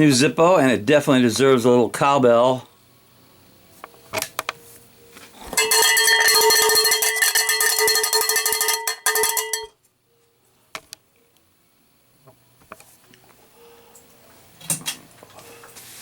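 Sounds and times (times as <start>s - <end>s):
cowbell fast roll: 5.5s - 9.7s.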